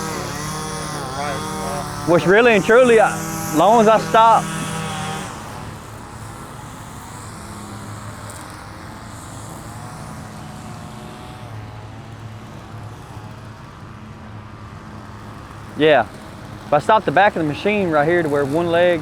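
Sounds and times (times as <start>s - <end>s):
engine idling: 0.0s - 6.1s.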